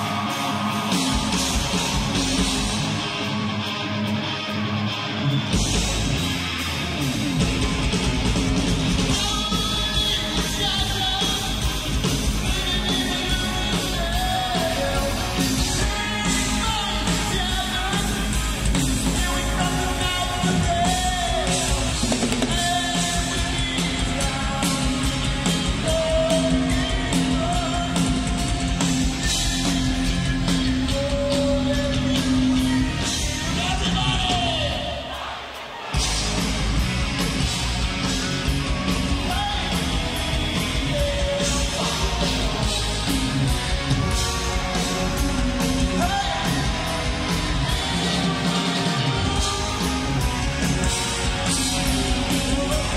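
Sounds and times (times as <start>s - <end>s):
heavy metal band playing: 0.0s - 52.9s
man singing and yelling: 9.0s - 36.1s, 38.1s - 52.9s.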